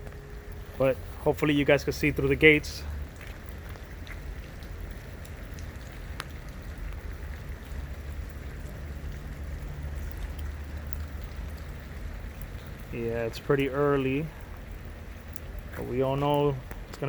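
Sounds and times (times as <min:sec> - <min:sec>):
steady rain falling: 0:00.0 - 0:17.0.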